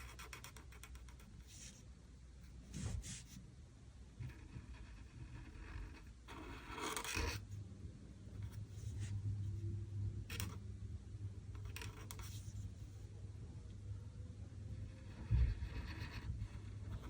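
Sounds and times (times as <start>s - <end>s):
pen scratching on paper: 0.0s - 1.8s, 4.3s - 7.4s, 11.6s - 12.9s, 14.9s - 17.0s
low steady hum: 0.0s - 17.0s.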